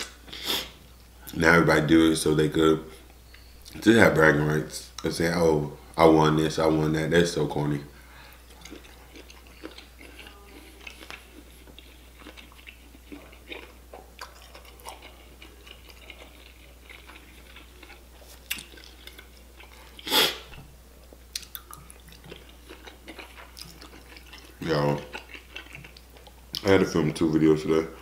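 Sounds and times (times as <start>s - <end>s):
close chewing mouth sounds: 8.3s - 26.7s.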